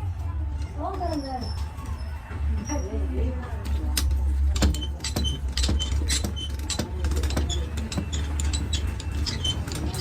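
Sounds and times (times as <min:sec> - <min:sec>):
metal clinks and knocks: 0:04.4 - 0:10.0.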